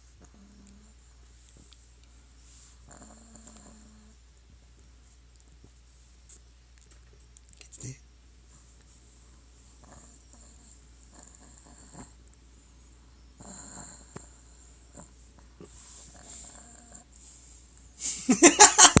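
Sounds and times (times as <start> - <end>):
dog snoring: 0.2 - 1.0, 2.8 - 4.2, 9.8 - 17.6.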